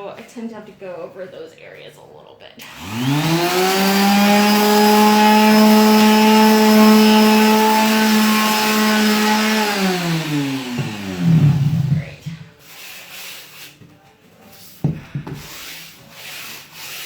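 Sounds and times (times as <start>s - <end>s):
electric sander running: 2.6s - 12.4s.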